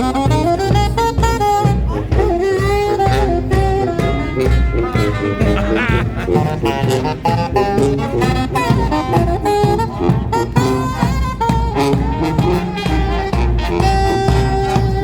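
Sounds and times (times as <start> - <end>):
bass line: 0.0 - 15.0
drum beat: 0.0 - 15.0
street band playing: 0.0 - 15.0
wind instrument notes: 0.0 - 15.0.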